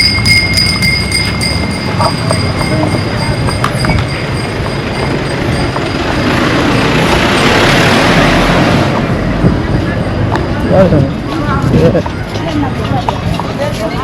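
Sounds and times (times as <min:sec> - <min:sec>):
street traffic: 0:00.0 - 0:14.0
vehicle passing close by: 0:04.8 - 0:10.9.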